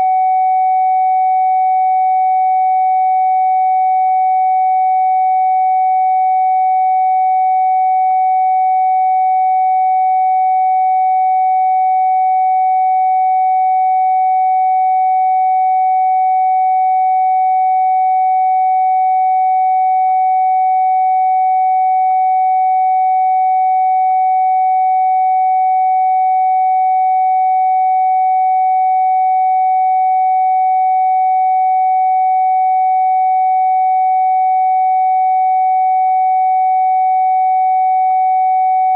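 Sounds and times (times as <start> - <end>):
electronic sine-wave test tone: 0.0 - 38.9.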